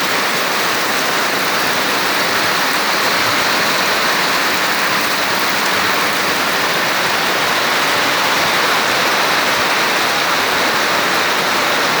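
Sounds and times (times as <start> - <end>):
heavy rain downpour: 0.0 - 12.0.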